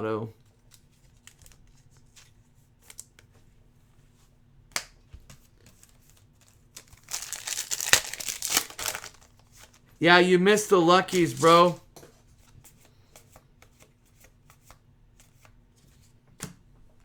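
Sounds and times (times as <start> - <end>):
foil wrapper crinkling and tearing: 6.4 - 9.7, 11.1 - 11.6.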